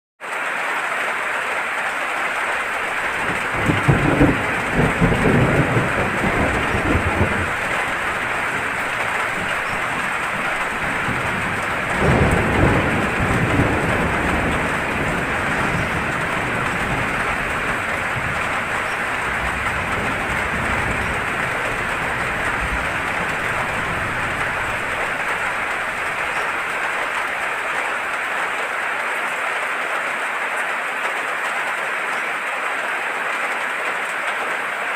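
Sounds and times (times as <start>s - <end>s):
heavy rain falling: 0.2s - 34.9s
low thunder rumbles: 2.5s - 28.4s.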